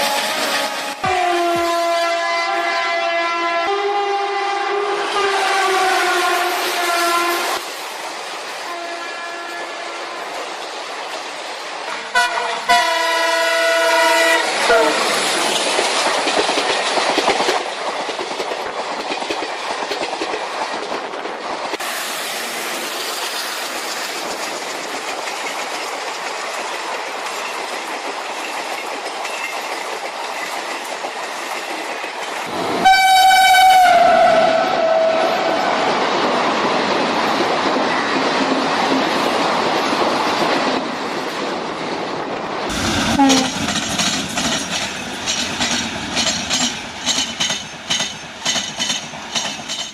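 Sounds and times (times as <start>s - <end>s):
train horn chord: 0.0s - 7.6s, 8.7s - 10.3s, 12.0s - 15.1s, 32.8s - 35.5s, 43.1s - 43.6s
train running rushing noise: 0.0s - 49.9s.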